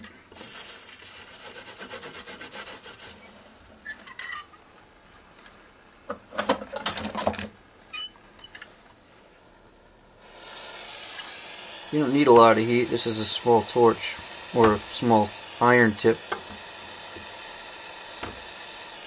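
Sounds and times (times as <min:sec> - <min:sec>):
rubbing on copper sheet: 0:00.4 - 0:03.3.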